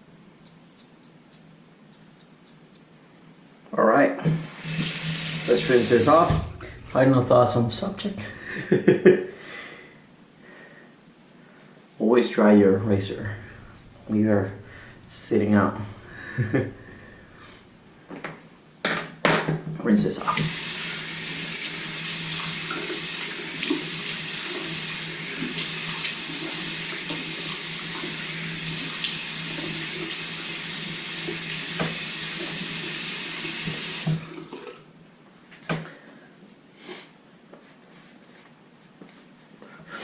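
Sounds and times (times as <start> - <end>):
tap running into sink: 4.2 - 7.3, 25.4 - 29.9, 31.3 - 32.6, 33.4 - 34.7.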